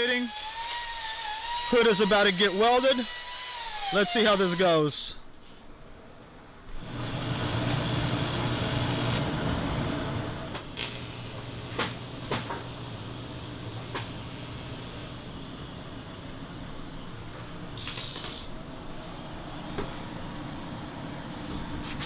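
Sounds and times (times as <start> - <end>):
welding arc buzzing hiss: 6.7 - 15.6, 17.7 - 18.7.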